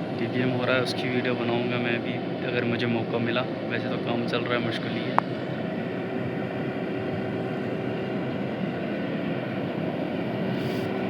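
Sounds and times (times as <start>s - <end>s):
diesel engine drone: 0.0s - 11.0s.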